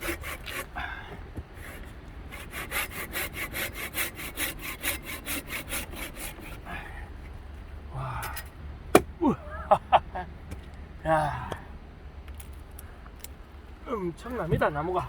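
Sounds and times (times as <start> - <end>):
hand saw cutting log: 0.0 - 6.7.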